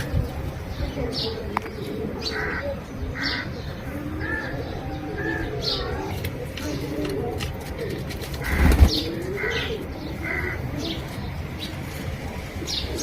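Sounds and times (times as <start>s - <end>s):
pigeons cooing: 0.0s - 13.0s
small birds chirping: 0.0s - 13.0s
wings flapping: 7.4s - 9.2s.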